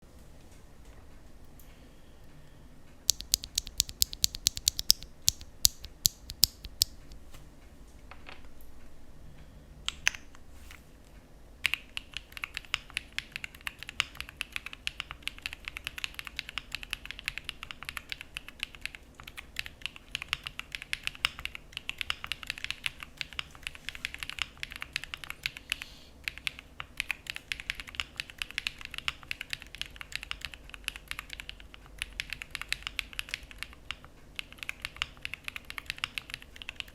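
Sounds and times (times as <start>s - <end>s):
mechanical keyboard typing: 3.1s - 7.2s, 11.6s - 36.9s.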